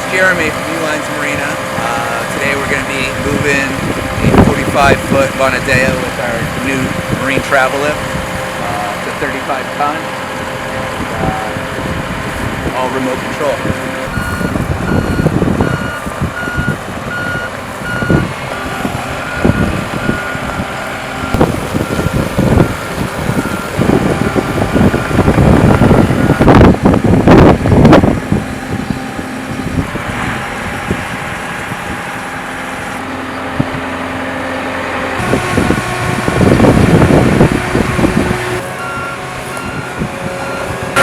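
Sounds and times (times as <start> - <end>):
engine rumble: 0.0 - 41.0
motion alarm beeping: 14.1 - 20.6, 21.2 - 26.6, 38.8 - 41.0.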